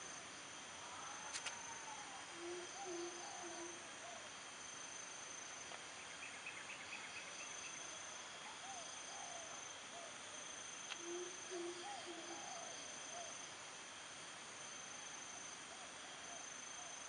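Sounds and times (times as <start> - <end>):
insect rapid trill: 0.0 - 17.0
insects chirring: 0.0 - 17.0
faint animal calls: 0.9 - 4.3, 11.0 - 13.4.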